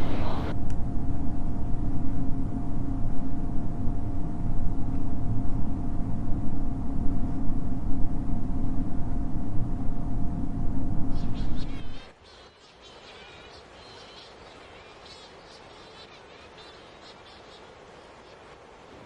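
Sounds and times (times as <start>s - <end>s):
low rumbling drone: 0.0s - 12.1s
thin constant hum tone: 0.0s - 19.0s.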